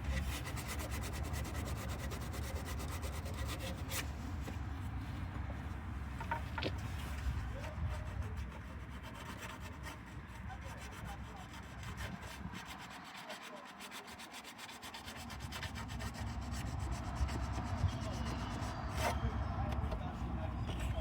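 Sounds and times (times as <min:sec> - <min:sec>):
sandpaper rubbing on metal: 0:00.1 - 0:04.1, 0:08.1 - 0:17.6.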